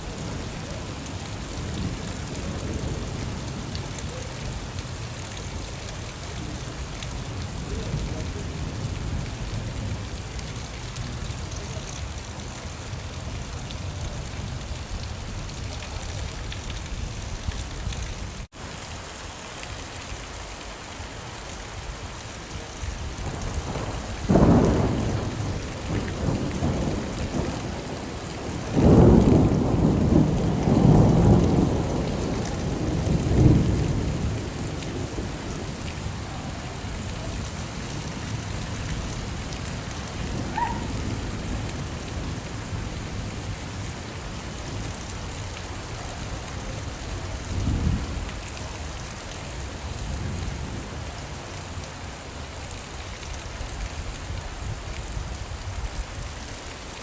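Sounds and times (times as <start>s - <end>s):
steady rain: 0.0s - 57.0s
thunder clap and rumble: 23.1s - 43.8s, 47.0s - 48.5s.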